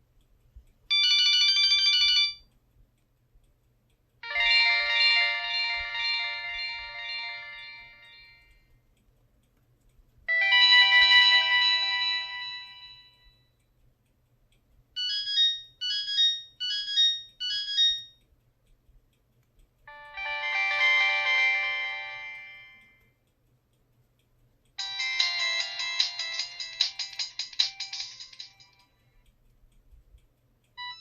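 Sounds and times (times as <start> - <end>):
phone chiming chord: 4.2 - 8.4, 10.3 - 13.2, 19.9 - 22.9, 24.8 - 28.7
phone beeping notes: 30.8 - 31.0.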